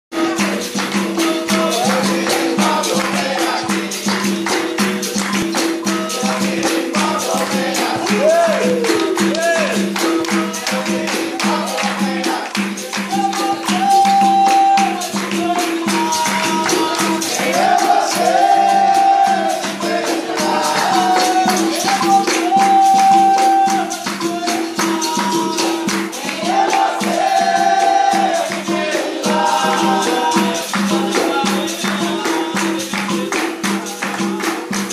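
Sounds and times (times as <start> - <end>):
berimbaus struck in rhythm: 0.1 - 34.9
tambourine-like jingles: 0.2 - 34.9
voices singing long notes: 13.0 - 33.2.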